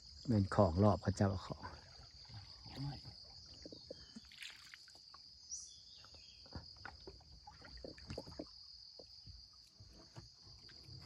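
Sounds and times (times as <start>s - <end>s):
water splashing: 1.6s - 5.2s.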